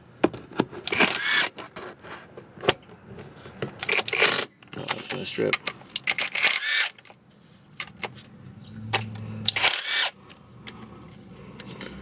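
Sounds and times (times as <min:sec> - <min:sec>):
ratchet clicking: 0:00.9 - 0:01.5, 0:09.5 - 0:10.1.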